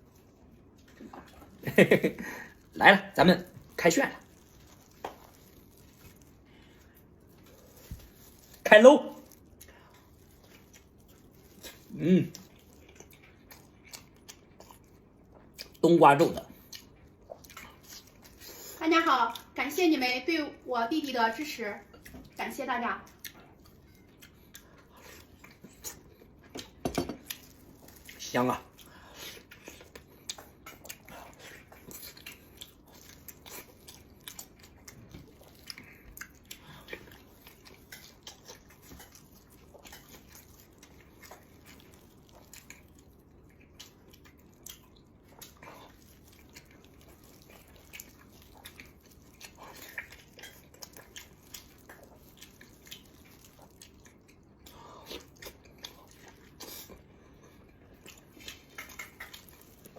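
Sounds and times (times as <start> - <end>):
person chewing: 0.0 - 19.6, 21.8 - 22.4, 23.0 - 59.9
wet mouth smacks and clicks: 58.4 - 59.8.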